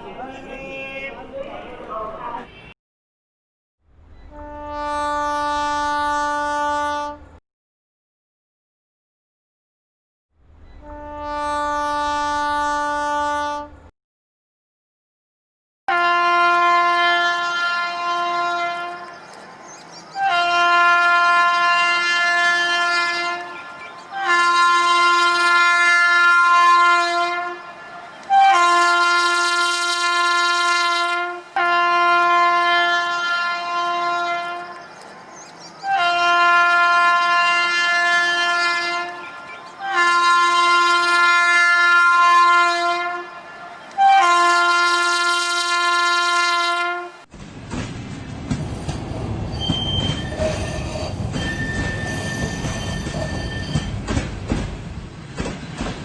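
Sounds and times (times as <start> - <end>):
train horn blasts: 4.2 - 7.4, 10.8 - 13.9, 15.9 - 19.1, 20.2 - 34.8, 35.8 - 47.3, 48.3 - 55.2.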